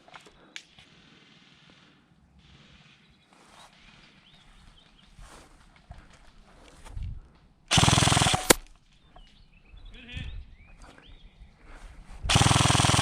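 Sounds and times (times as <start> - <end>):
airsoft gun full-auto bursts: 7.7 - 8.6, 12.3 - 13.0.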